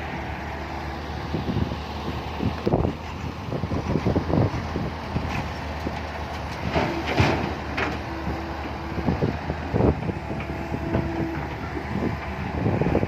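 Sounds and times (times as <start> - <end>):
diesel engine under load: 0.0 - 13.0.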